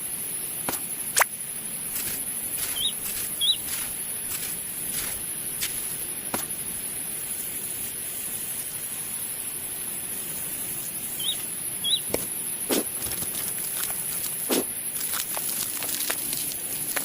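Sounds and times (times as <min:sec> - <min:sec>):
high-pitched insect drone: 0:00.0 - 0:15.0
bird chirps: 0:02.6 - 0:03.9, 0:11.1 - 0:12.2.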